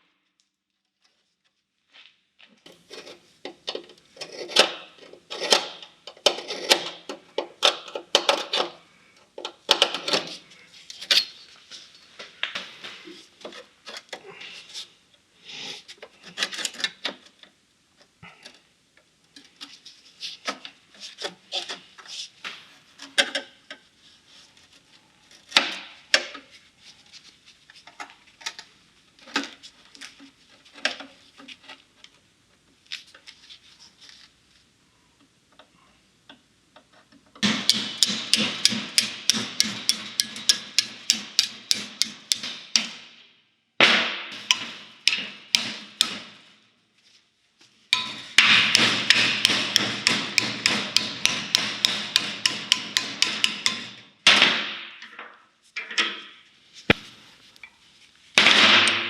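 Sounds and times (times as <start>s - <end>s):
hammer blows on sheet steel: 37.4s - 43.2s, 43.8s - 46.5s, 48.0s - 55.0s.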